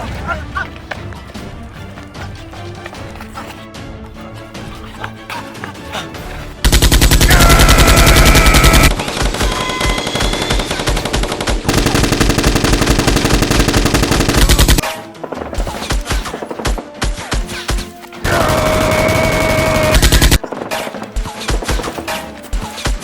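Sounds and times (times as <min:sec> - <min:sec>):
background music: 0:00.0 - 0:23.0
rapid machine-gun fire: 0:06.6 - 0:14.8, 0:18.3 - 0:20.6.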